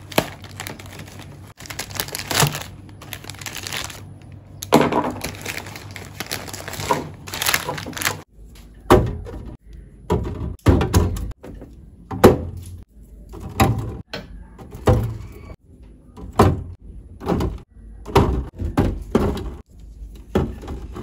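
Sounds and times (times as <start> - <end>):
containers knocking on fridge shelves: 16.2 - 19.6.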